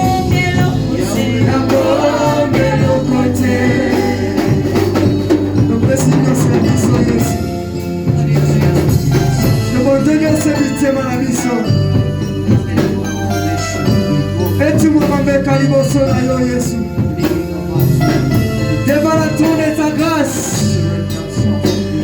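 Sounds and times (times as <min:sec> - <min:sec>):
hand percussion: 0:00.0 - 0:15.4
drums steady beat: 0:00.0 - 0:22.0
pitched instruments: 0:00.0 - 0:22.0.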